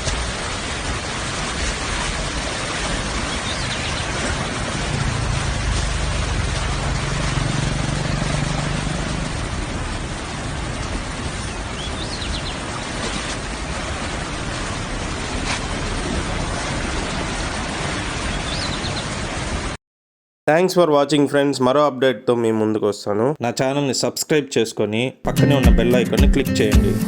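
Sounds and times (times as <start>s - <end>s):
rushing floodwater: 0.0s - 19.8s
low hum: 4.3s - 11.3s.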